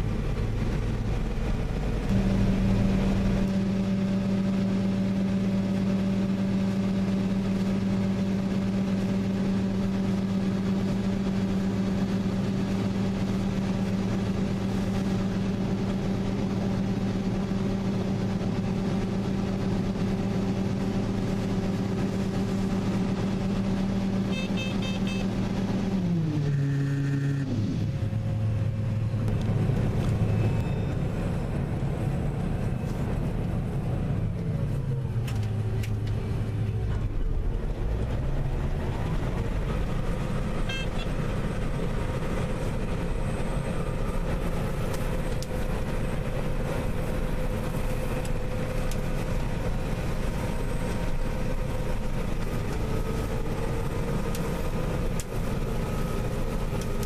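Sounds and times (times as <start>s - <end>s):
combine harvester running: 0.0s - 57.0s.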